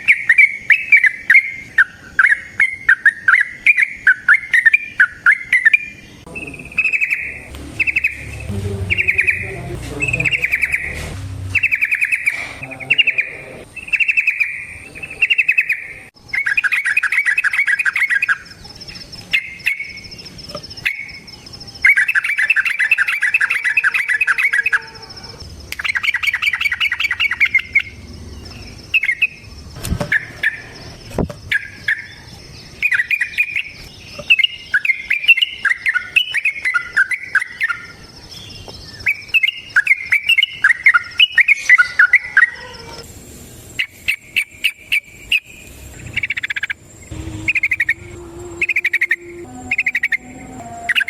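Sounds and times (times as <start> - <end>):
bulbul singing: 0.0 - 43.1, 43.7 - 51.0
faint high whine: 44.9 - 51.0.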